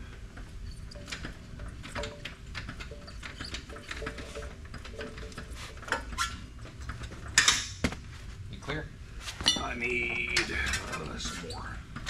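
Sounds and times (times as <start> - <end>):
motorcycle parts clicking and scraping: 0.3 - 8.1.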